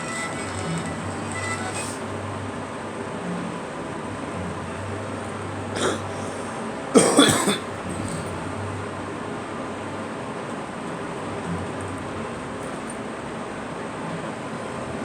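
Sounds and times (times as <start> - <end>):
girl coughing: 5.8 - 6.2, 7.0 - 7.7.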